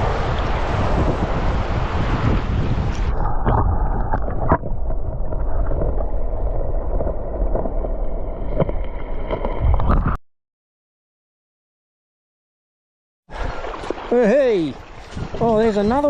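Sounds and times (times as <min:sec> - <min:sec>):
wind buffeting microphone: 0:00.0 - 0:07.7, 0:13.3 - 0:16.0.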